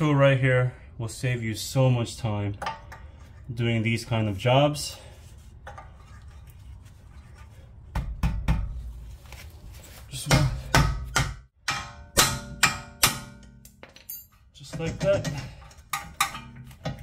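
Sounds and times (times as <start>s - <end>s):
hammer striking metal tool: 10.3s - 14.3s.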